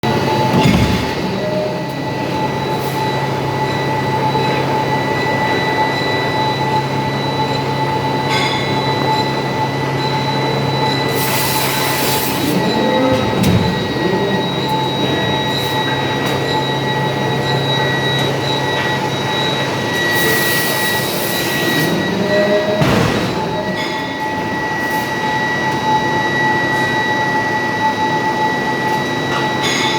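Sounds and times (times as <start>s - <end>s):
machine hum with high whine: 0.0s - 29.9s.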